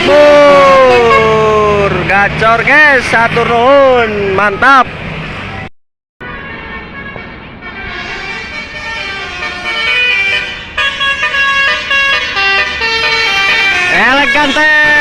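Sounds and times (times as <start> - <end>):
bus horn playing a tune: 0.7 - 1.5, 6.2 - 15.0.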